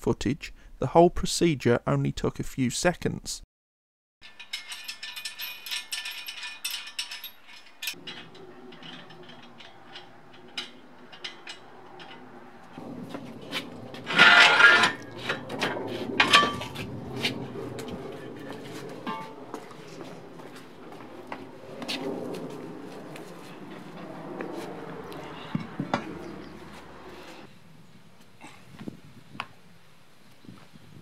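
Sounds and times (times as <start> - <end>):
loud scraping rush: 7.9 - 27.5.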